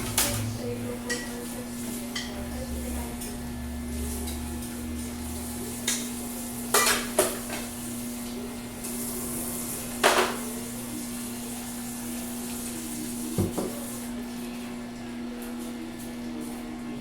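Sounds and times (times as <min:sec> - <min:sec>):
dishes and utensils clattering: 0:00.0 - 0:03.4, 0:05.8 - 0:07.8, 0:10.0 - 0:10.6.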